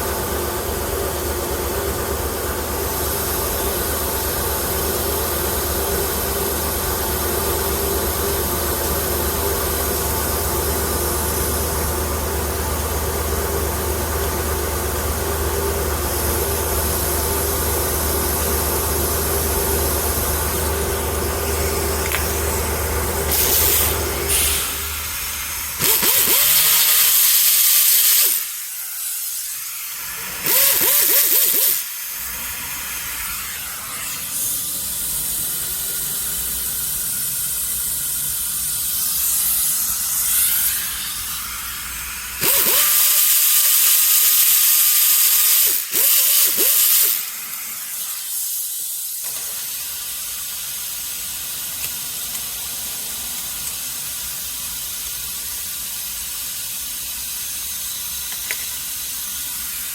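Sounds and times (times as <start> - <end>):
loud hissing bursts: 0.0 - 59.9.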